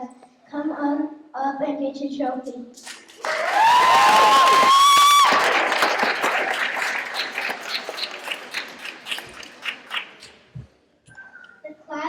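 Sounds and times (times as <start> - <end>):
children clapping: 2.8 - 10.5
children cheering: 3.2 - 9.9.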